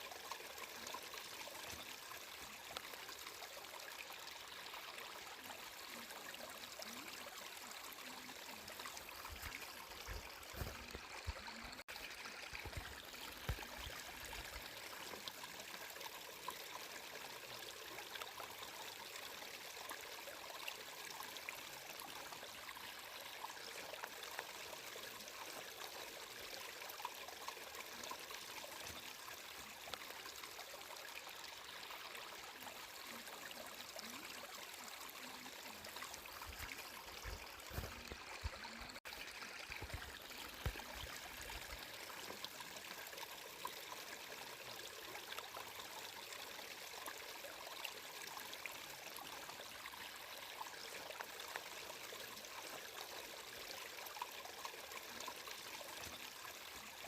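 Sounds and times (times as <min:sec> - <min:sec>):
water trickling and babbling: 0:00.0 - 0:57.0.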